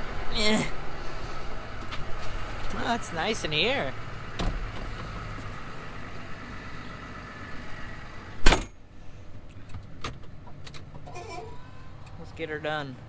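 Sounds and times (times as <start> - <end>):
tractor engine idling: 0.0 - 13.0
door slamming: 8.4 - 8.8.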